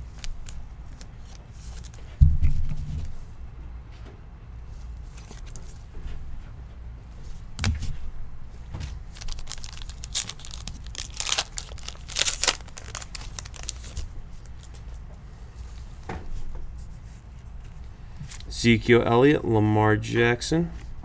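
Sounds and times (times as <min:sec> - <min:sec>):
wrapper tearing and crinkling: 0:00.0 - 0:02.0, 0:09.0 - 0:14.8.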